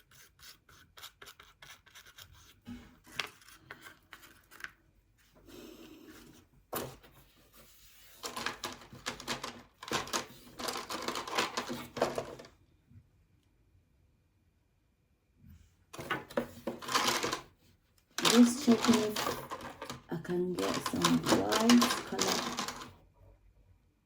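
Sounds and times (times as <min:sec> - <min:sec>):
craft materials clicking and scraping: 0:16.0 - 0:17.5, 0:18.2 - 0:22.9.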